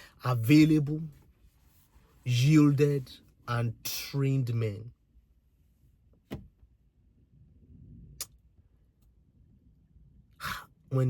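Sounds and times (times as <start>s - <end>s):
soft thump: 6.2s - 6.6s
person talking: 10.4s - 11.0s.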